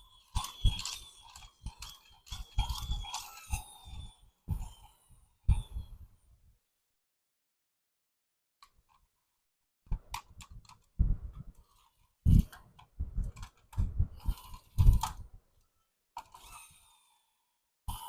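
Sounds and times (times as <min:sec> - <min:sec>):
plastic toys clicking and knocking: 0:00.0 - 0:05.8, 0:09.9 - 0:17.2.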